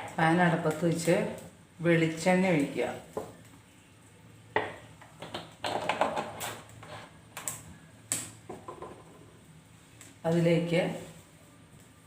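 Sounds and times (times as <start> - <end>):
kitchen utensils clicking and knocking: 5.1 - 6.6.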